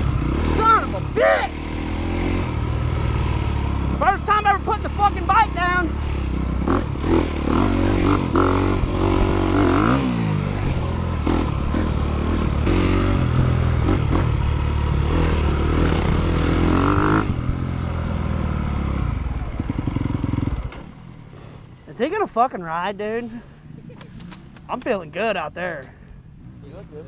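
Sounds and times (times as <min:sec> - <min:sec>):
dirt bike engine revving: 0:00.0 - 0:22.3.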